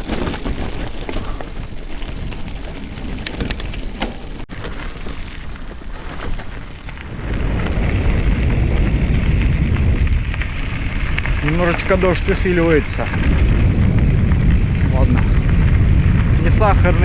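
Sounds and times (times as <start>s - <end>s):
sharp clicks and rattles: 0.0s - 4.5s
bicycle rolling over rough ground: 0.0s - 17.0s
wind buffeting microphone: 6.7s - 17.0s.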